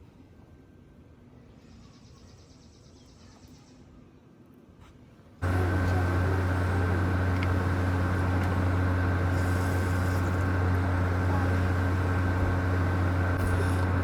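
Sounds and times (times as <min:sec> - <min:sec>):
low machine hum: 0:05.4 - 0:14.0.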